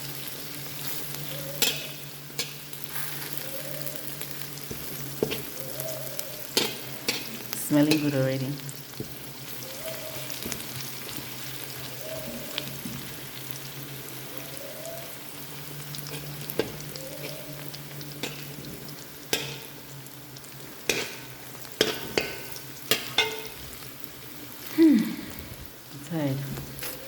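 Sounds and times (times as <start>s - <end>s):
food sizzling in a frying pan: 0.0s - 27.0s
utensil striking pan: 1.4s - 2.7s, 6.5s - 8.2s, 16.0s - 18.6s, 19.2s - 19.9s, 20.8s - 23.8s.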